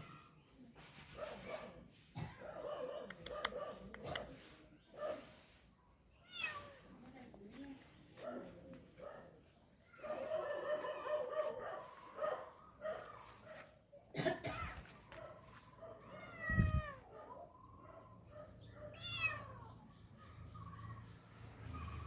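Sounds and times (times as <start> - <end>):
kitten meowing: 16.2 - 17.0, 19.0 - 19.7
high-pitched kitten chirps: 19.0 - 19.7.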